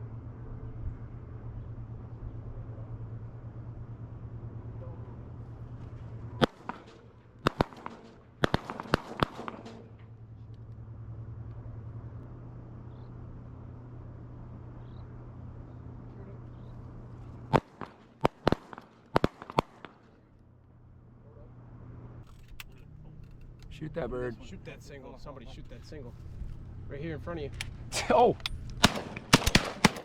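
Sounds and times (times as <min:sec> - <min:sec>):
steady low hum: 0:00.0 - 0:30.0
shotgun shots: 0:06.4 - 0:10.1, 0:17.5 - 0:20.2, 0:27.7 - 0:30.0.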